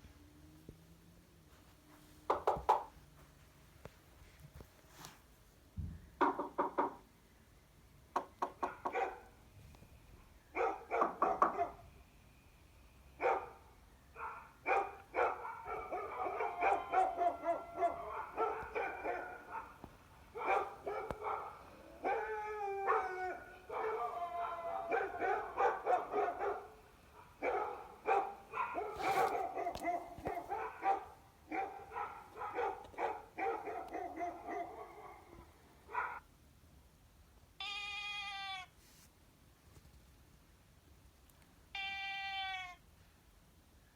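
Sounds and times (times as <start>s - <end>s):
dog barking and yipping: 8.6s - 9.4s, 10.6s - 11.8s, 13.2s - 36.2s.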